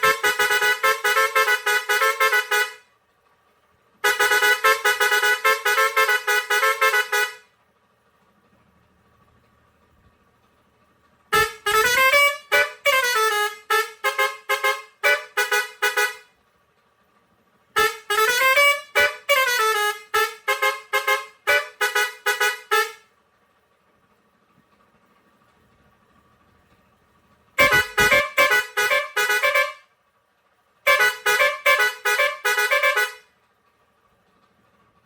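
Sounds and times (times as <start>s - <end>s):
air horn playing a tune: 0.0s - 2.9s, 4.0s - 7.5s, 11.3s - 16.3s, 17.8s - 23.1s, 27.6s - 29.9s, 30.8s - 33.3s.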